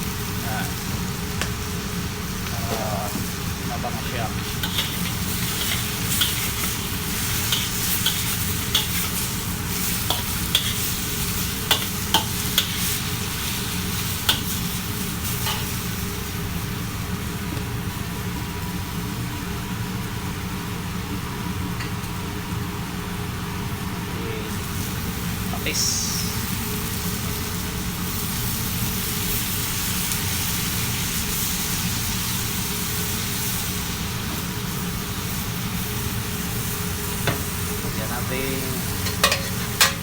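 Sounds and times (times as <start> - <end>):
chicken sizzling in a pan: 0.0 - 40.0
metal spatula scraping a pan: 4.6 - 11.0, 39.0 - 40.0.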